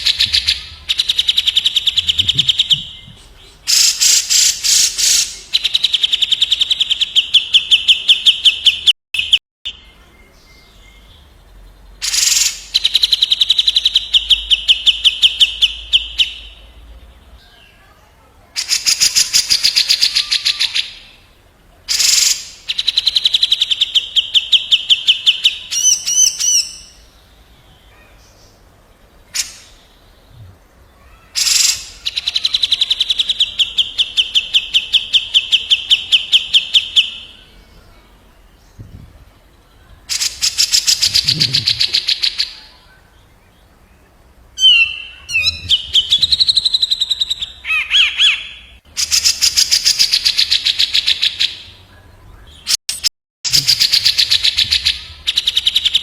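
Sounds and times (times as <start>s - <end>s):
bird short sharp calls: 40.1s - 42.8s.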